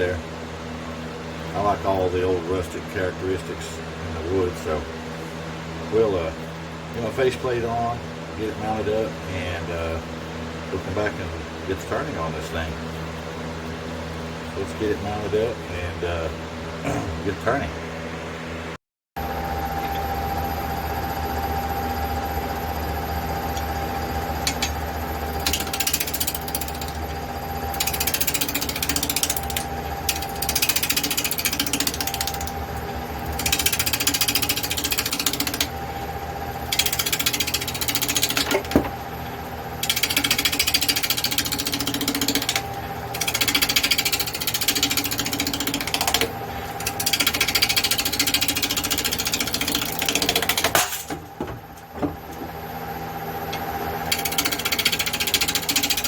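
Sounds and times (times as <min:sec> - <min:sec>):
wood lathe motor hum: 0:19.2 - 0:50.8, 0:52.3 - 0:56.0
turning tool chattering on wood: 0:24.4 - 0:35.8, 0:36.6 - 0:38.9, 0:39.8 - 0:51.1, 0:54.1 - 0:56.0.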